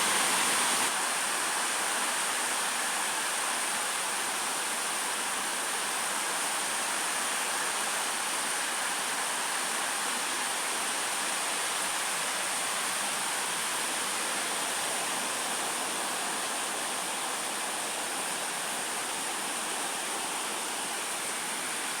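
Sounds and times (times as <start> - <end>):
heavy rain: 0.0 - 4.2.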